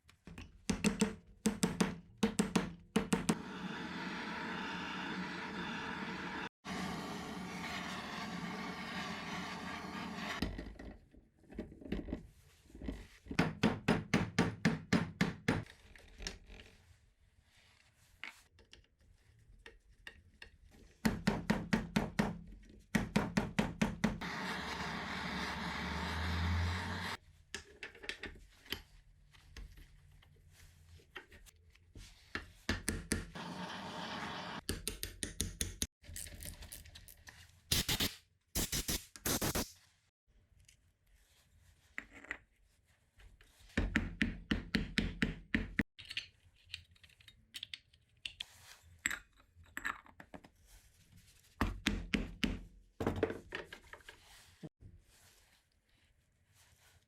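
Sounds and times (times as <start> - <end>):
hiss: 37.8 - 39.7.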